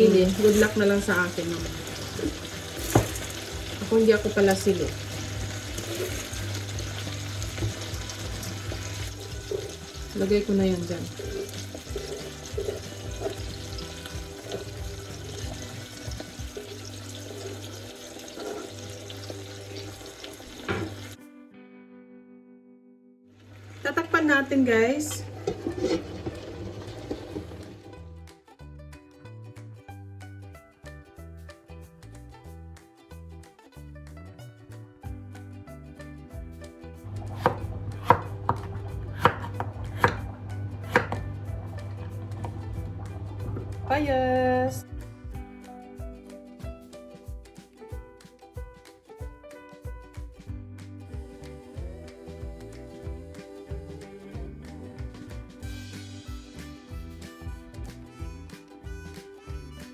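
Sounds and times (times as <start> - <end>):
water running and splashing: 0.0 - 21.2, 23.4 - 28.0, 37.0 - 44.8
background music: 0.0 - 22.3, 23.5 - 59.9
knife chopping on cutting board: 2.2 - 3.4, 37.2 - 41.6, 42.3 - 42.8.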